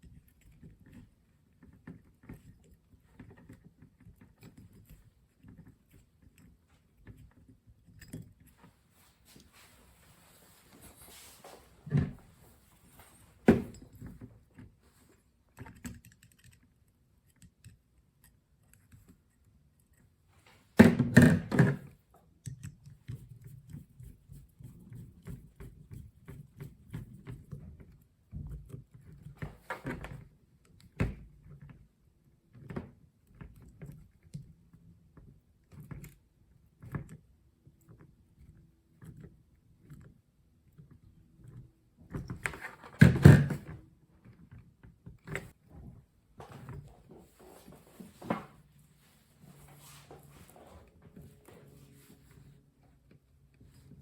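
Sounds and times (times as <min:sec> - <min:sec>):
small clicks and taps of wiring: 0:14.5 - 0:20.2, 0:22.2 - 0:29.4.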